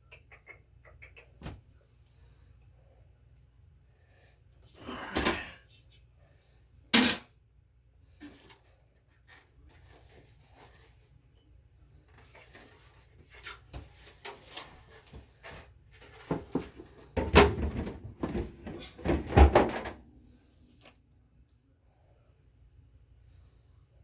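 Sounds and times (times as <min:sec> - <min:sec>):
refrigerator trays knocking and clattering: 0:16.1 - 0:20.0.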